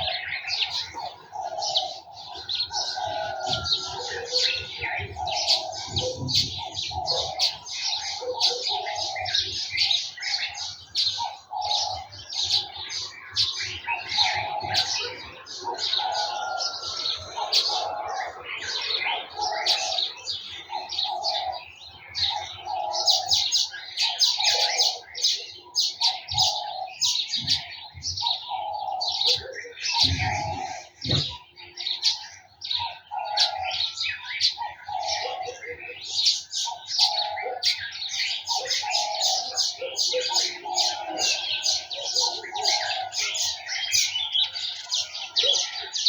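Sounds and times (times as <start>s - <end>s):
small birds chirping: 0.0s - 46.0s
low bird call: 27.3s - 32.2s.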